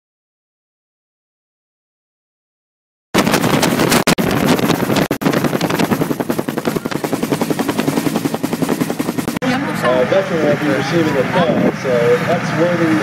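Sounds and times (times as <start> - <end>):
helicopter rotor chop: 3.2 - 13.0.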